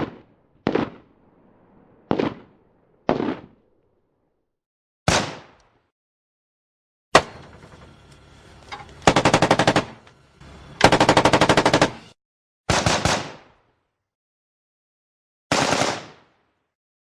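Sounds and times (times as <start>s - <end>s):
rifle gunfire: 0.0s - 1.2s, 2.0s - 3.7s, 12.7s - 13.5s, 15.5s - 16.3s.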